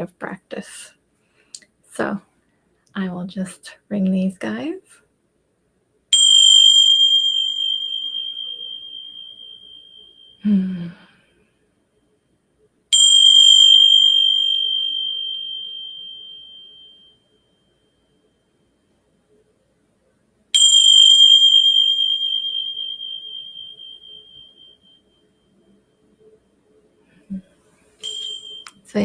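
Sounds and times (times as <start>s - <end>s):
hand cymbals ringing: 6.2s - 10.5s, 12.9s - 17.3s, 20.6s - 25.0s, 28.0s - 29.0s.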